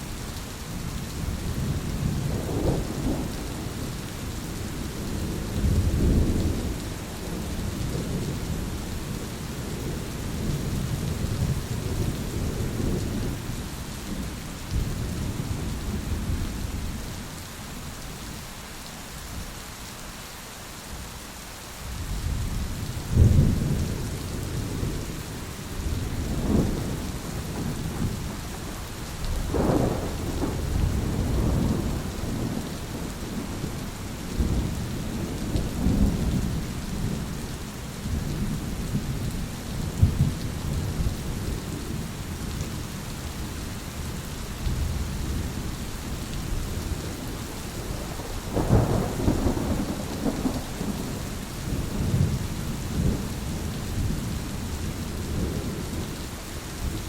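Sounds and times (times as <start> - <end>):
heavy rain: 0.0 - 57.0
rolling thunder: 23.1 - 37.4, 46.4 - 56.0
loud thunderclap: 29.4 - 32.6, 47.9 - 52.3.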